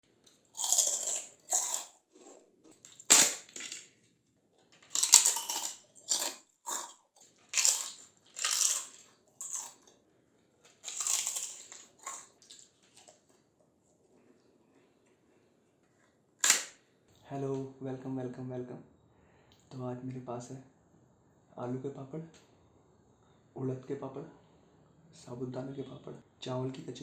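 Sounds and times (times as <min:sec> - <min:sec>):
person crunching fried snacks: 0:00.2 - 0:03.9, 0:04.8 - 0:09.9, 0:10.7 - 0:13.2, 0:16.4 - 0:16.8.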